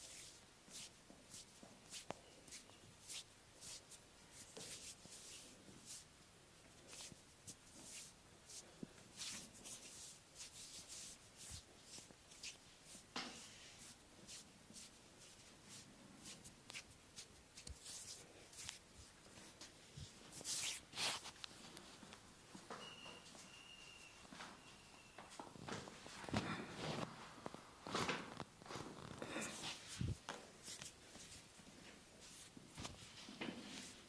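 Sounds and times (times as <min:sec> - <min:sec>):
hands swishing over skin: 0:06.9 - 0:19.1, 0:20.0 - 0:21.4, 0:29.5 - 0:31.5.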